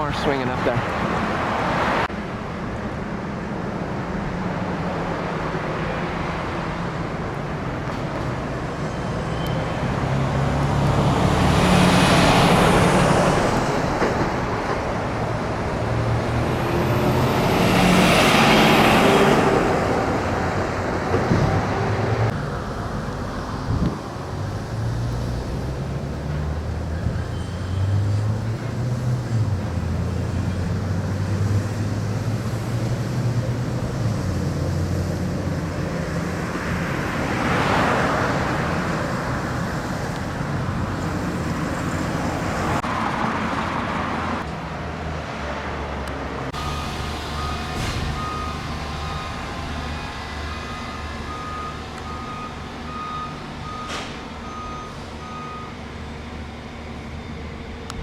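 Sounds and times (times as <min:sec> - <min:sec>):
vehicles passing: 0:00.0 - 0:58.0
heavy machinery engine hum: 0:45.6 - 0:58.0
reversing alarm beeps: 0:46.6 - 0:49.6, 0:50.5 - 0:55.8.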